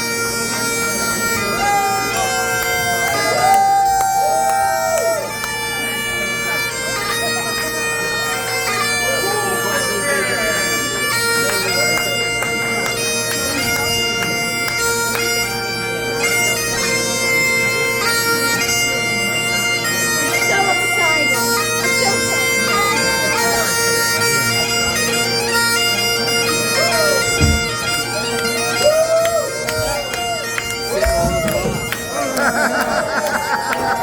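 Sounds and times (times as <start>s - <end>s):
bagpipes playing a melody: 0.0s - 34.0s.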